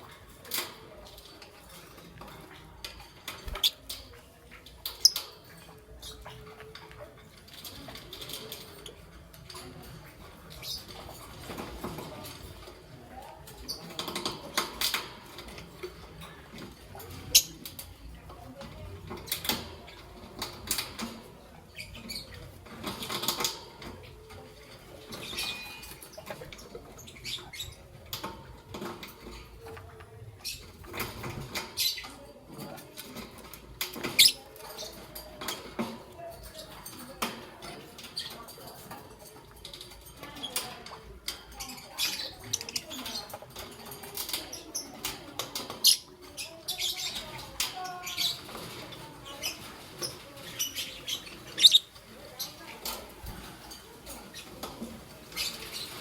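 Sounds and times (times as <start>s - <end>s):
bird scuffling: 0.1s - 4.1s.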